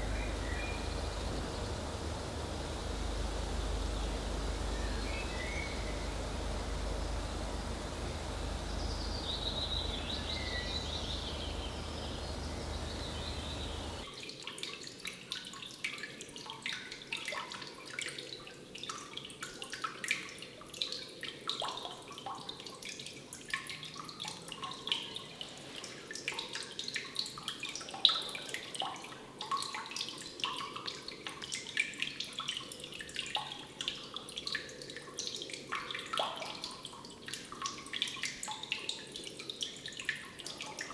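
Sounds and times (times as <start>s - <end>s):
faint high chirps: 0.0s - 14.0s
low outdoor rumble: 0.0s - 14.0s
water dripping: 0.0s - 14.0s.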